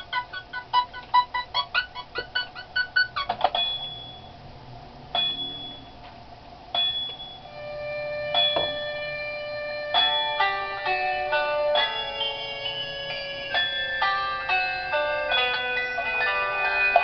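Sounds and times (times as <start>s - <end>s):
chime-like electronic tones: 3.6s - 4.4s, 5.2s - 6.0s, 6.8s - 17.0s
short bleeping tones: 5.2s - 6.0s.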